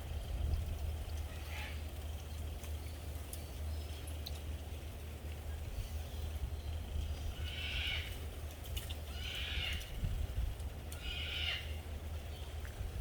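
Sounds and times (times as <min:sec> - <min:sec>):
steady low rumble: 0:00.0 - 0:13.0
high-pitched animal calls: 0:11.0 - 0:11.7.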